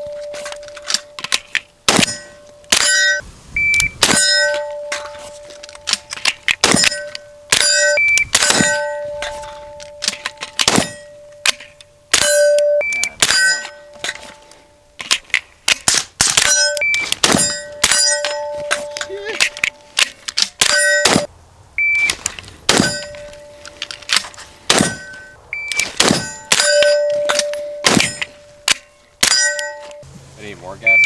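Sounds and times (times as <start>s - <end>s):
steel targets clanging: 0.0s - 31.0s
gunshots: 1.9s - 3.0s, 6.6s - 8.9s, 15.9s - 18.2s, 22.7s - 23.0s, 24.7s - 25.1s, 25.7s - 28.2s.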